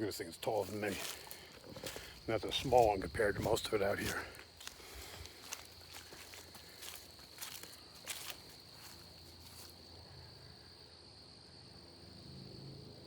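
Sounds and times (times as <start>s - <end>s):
high-pitched insect trill: 0.0s - 13.0s
footsteps crunching through brush: 0.2s - 10.0s.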